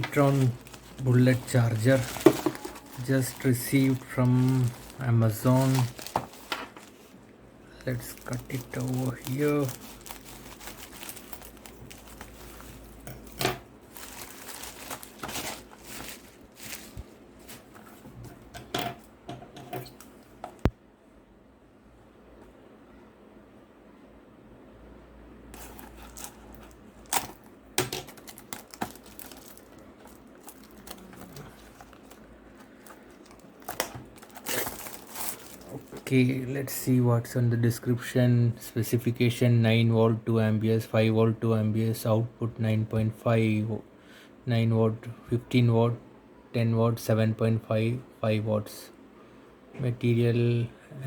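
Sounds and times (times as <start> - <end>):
packaging clicks and knocks: 0.0 - 5.0, 5.6 - 6.9, 8.2 - 17.0, 25.6 - 36.0
packaging rustling and tapping: 0.0 - 7.1, 8.1 - 18.7, 25.6 - 36.1
packaging being torn open: 25.6 - 32.2, 32.8 - 36.0
sharp crack of packaging: 25.6 - 32.2, 33.2 - 35.8.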